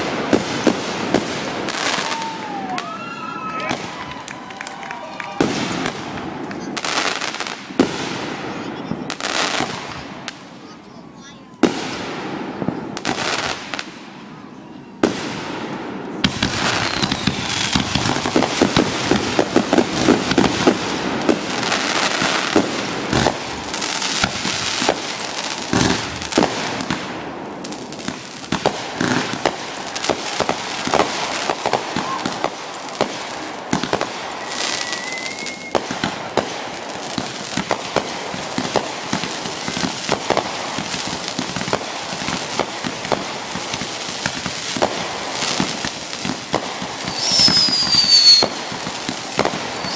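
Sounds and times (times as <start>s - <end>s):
fireworks bangs and crackling: 0.0s - 49.9s
rising firework whistle: 1.1s - 6.5s, 16.3s - 20.8s, 33.7s - 36.5s, 47.0s - 49.9s.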